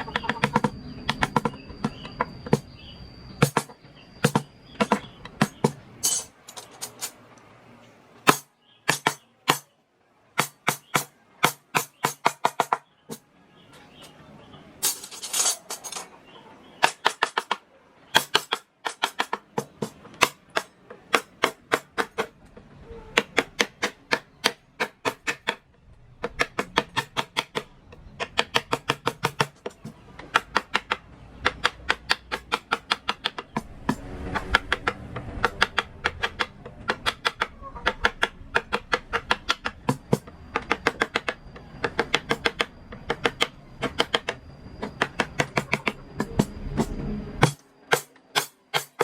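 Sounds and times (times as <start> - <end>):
mallet tapping chisel into wood: 0.1 - 2.6, 26.2 - 33.7, 34.7 - 46.5.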